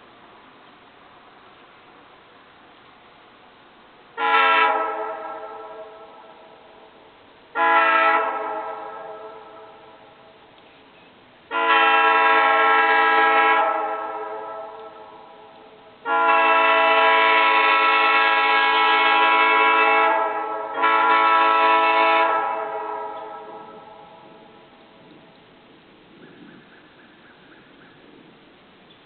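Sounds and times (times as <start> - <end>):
train air horn chord: 4.2 - 6.6, 7.5 - 10.2, 11.5 - 24.6.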